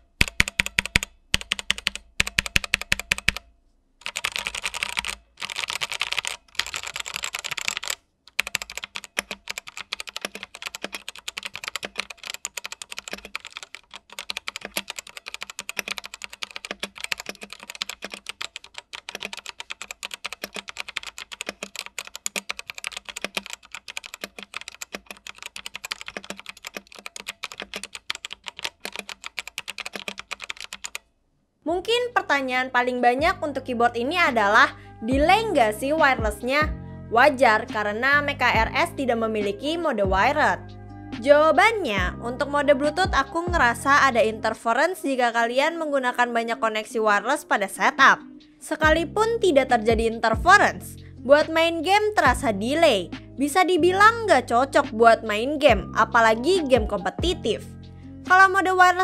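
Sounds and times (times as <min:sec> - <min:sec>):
mechanical keyboard typing: 0:00.2 - 0:03.4, 0:04.0 - 0:31.0.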